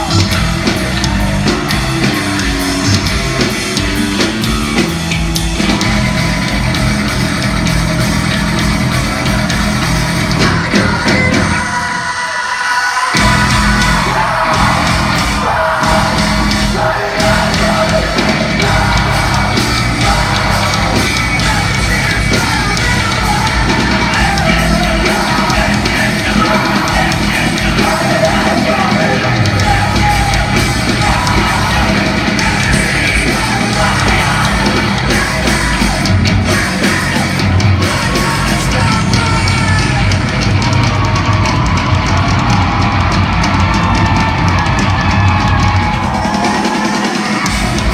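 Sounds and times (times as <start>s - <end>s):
hard rock band playing: 0.0s - 47.9s
person yelling and singing: 10.4s - 41.6s.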